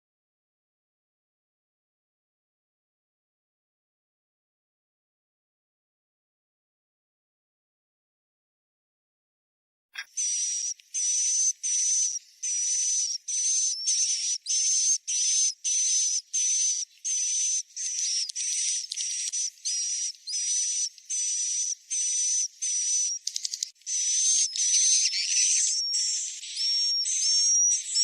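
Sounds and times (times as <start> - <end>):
high buzzy bird chirps: 10.0 - 28.0.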